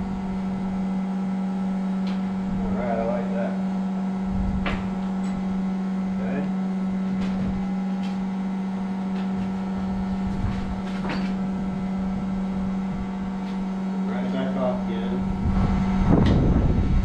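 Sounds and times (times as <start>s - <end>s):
machine humming: 0.0s - 17.0s.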